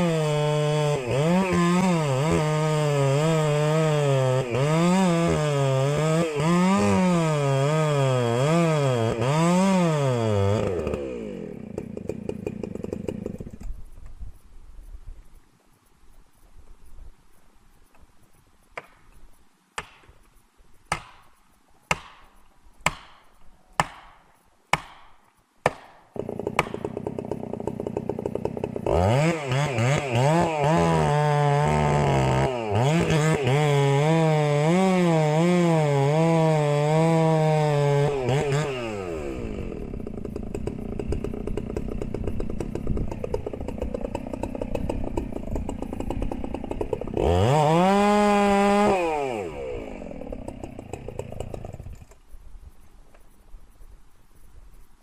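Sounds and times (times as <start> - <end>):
chainsaw revving and cutting: 0.0 - 13.7, 25.6 - 52.2
sharp knocks: 20.9 - 21.3, 21.9 - 26.9.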